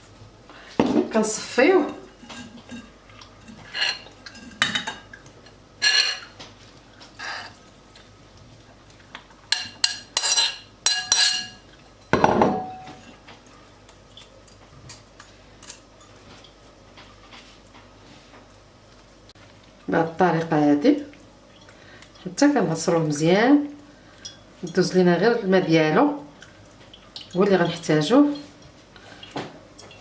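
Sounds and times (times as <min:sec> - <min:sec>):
spoon scraping a strainer: 0:01.8 - 0:04.6, 0:05.8 - 0:06.3, 0:09.8 - 0:11.5.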